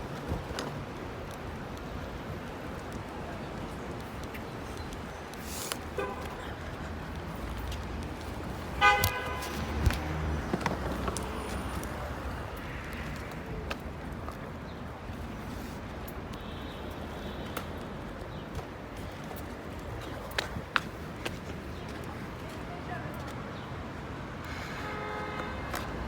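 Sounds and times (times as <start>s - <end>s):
low outdoor background noise: 0.0s - 26.0s
short car horn toot: 8.8s - 9.4s.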